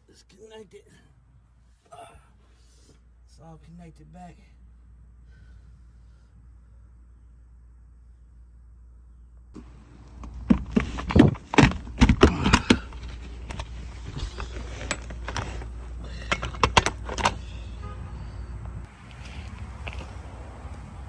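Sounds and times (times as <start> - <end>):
metal tools clinking: 10.2 - 17.9.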